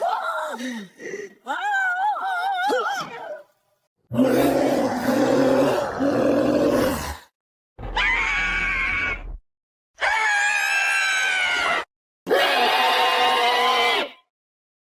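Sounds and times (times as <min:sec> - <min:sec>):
person grunting: 0:00.0 - 0:03.5
high-pitched shouts: 0:00.0 - 0:03.6.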